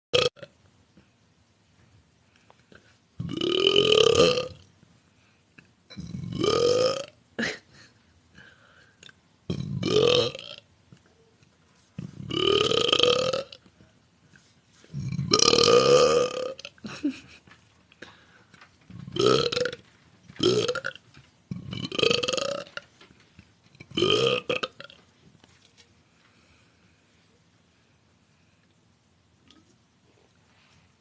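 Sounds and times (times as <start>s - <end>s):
woman burping: 5.9s - 7.9s, 15.0s - 17.4s.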